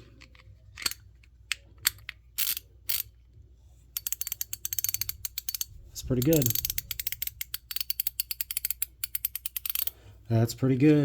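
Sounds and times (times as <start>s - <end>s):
ratchet clicking: 2.4s - 3.1s, 4.0s - 10.0s.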